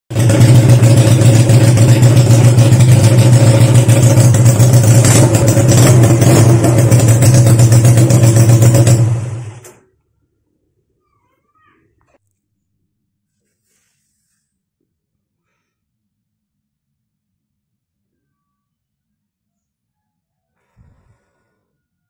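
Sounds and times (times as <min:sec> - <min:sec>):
motorcycle engine running: 0:00.1 - 0:09.8.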